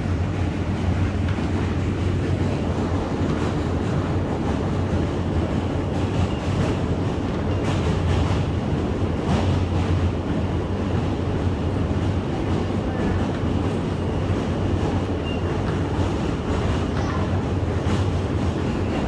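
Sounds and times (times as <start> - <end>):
subway train rumbling: 0.0 - 19.0.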